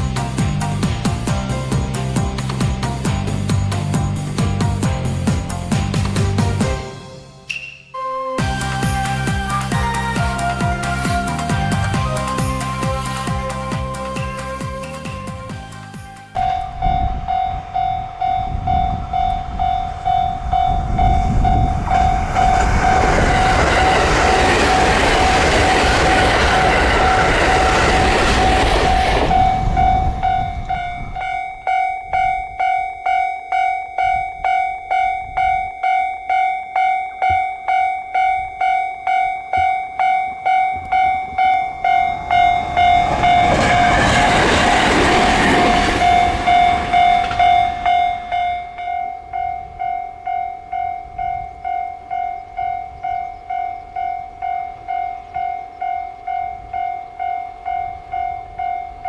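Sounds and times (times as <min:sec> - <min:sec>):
train passing: 0:00.0 - 0:07.5, 0:08.4 - 0:59.0
level crossing warning bell: 0:16.3 - 0:59.0.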